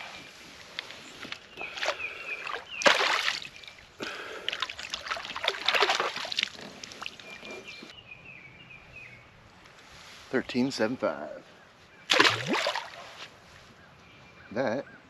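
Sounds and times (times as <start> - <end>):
water splashing: 1.6 - 7.9, 12.1 - 13.3.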